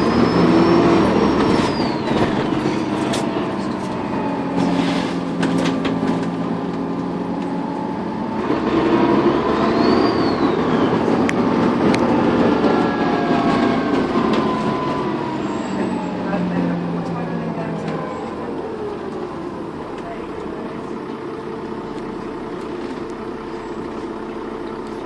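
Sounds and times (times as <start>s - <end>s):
turbocharger whistle: 0.0s - 3.0s, 7.8s - 11.4s
bus engine running: 0.0s - 25.0s.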